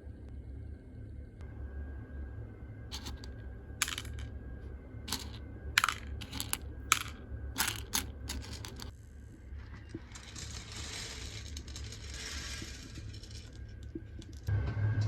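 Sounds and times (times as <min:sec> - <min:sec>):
coffee beans cracking while roasting: 0:02.9 - 0:04.2, 0:05.1 - 0:08.9, 0:09.8 - 0:14.5.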